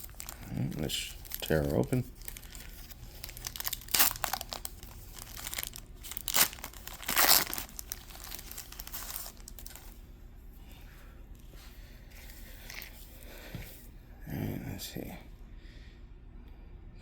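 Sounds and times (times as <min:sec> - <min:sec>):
loud paper rips: 0:00.0 - 0:09.8
paper wrapper crinkling: 0:00.0 - 0:10.0, 0:12.1 - 0:13.1.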